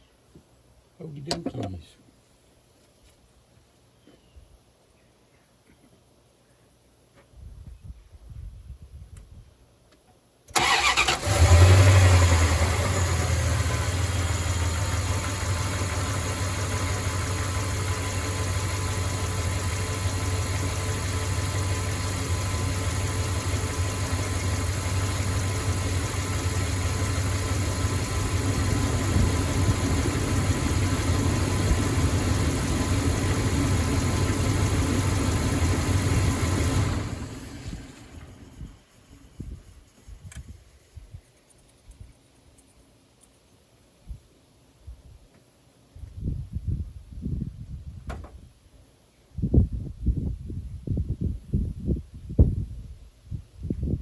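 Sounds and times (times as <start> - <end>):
truck engine starting and idling: 10.5 - 39.5.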